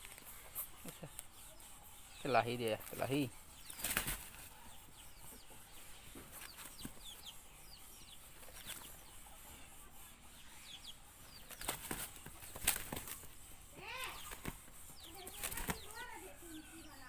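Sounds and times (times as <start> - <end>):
chicken wings beating: 2.8 - 4.6, 11.4 - 16.1.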